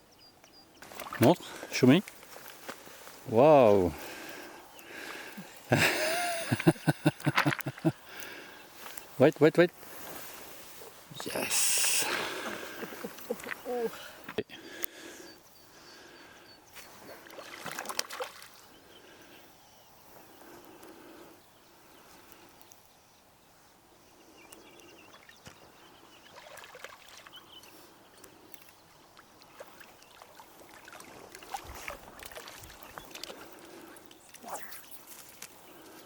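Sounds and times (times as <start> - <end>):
water sloshing and splashing: 0.8 - 2.8, 17.2 - 18.6, 26.3 - 27.4, 29.2 - 34.7.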